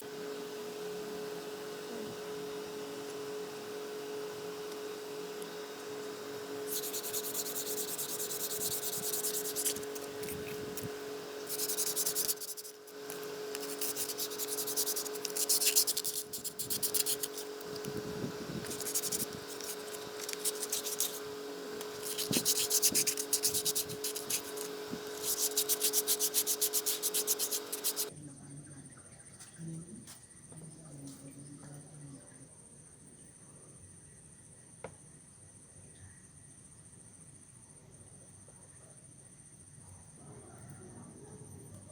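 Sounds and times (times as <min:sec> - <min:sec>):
hand sanding strokes: 0:06.6 - 0:28.1.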